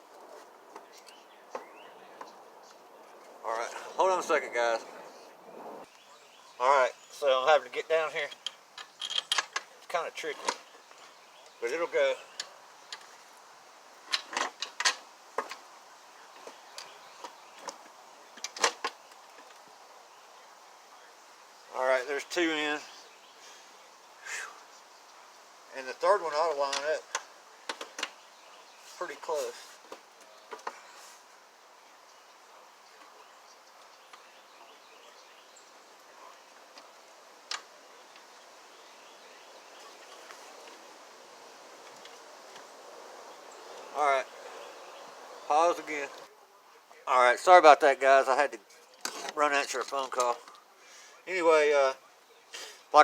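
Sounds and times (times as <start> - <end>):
faint outdoor background noise: 0.0 - 53.0
bolts clicking and knocking on metal: 8.3 - 9.7.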